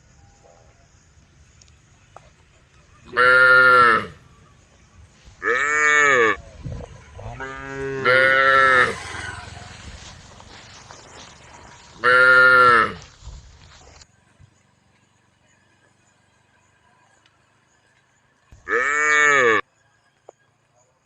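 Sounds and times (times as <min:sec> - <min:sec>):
cattle mooing: 0:07.2 - 0:09.4, 0:18.7 - 0:19.6.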